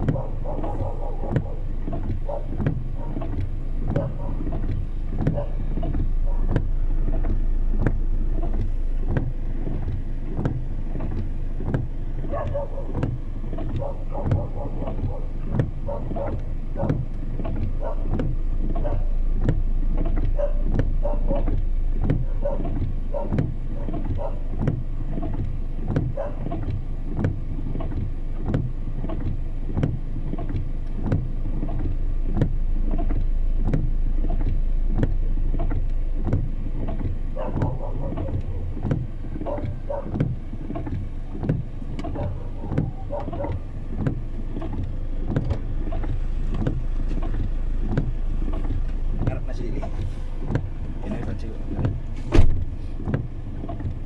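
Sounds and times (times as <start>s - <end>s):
engine and road noise rumble: 0.0s - 54.0s
sharp rain taps: 0.0s - 54.0s.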